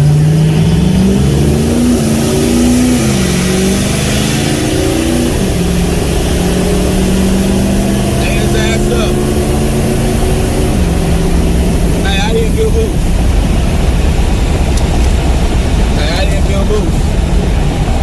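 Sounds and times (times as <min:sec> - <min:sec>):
truck engine accelerating: 0:00.0 - 0:18.0.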